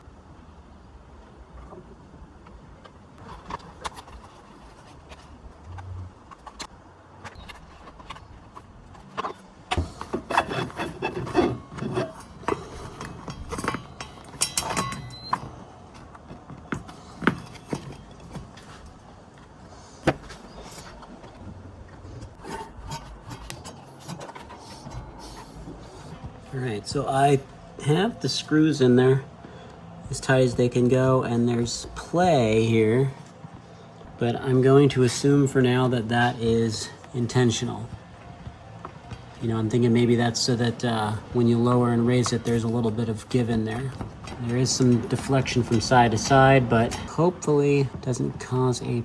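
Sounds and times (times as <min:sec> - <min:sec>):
knocks and scraping: 0:01.5 - 0:28.4, 0:29.4 - 0:49.0
low rumble: 0:05.4 - 0:06.6
brief low hum: 0:05.5 - 0:06.6.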